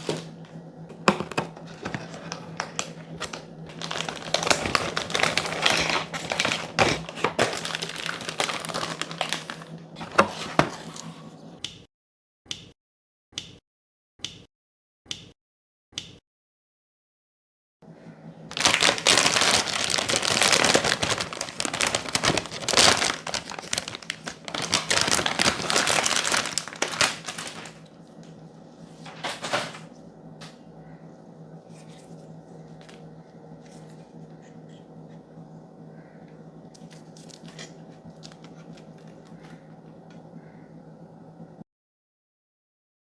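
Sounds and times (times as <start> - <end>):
plastic packaging crinkling: 0.0 - 0.4, 1.0 - 11.1, 18.5 - 29.9, 36.6 - 40.1.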